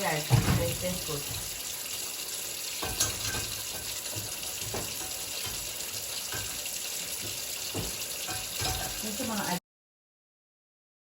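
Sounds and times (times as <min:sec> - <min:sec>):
tap running into a sink: 0:00.0 - 0:09.6
dishes clunking: 0:00.2 - 0:01.6, 0:02.7 - 0:09.4.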